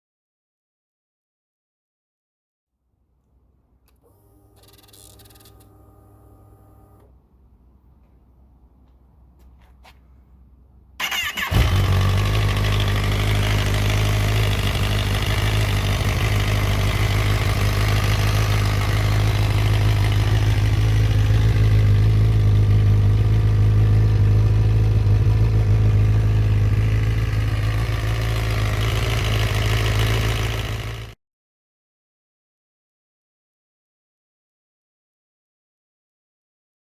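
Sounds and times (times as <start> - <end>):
motorcycle engine starting and idling: 3.8 - 7.3, 11.0 - 31.2.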